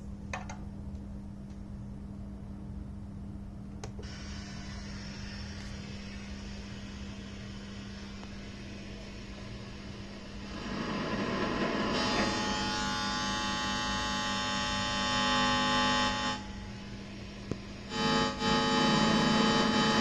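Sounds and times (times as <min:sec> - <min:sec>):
low steady hum: 0:00.0 - 0:20.0
loud buzzing hiss with whining tones: 0:04.0 - 0:20.0.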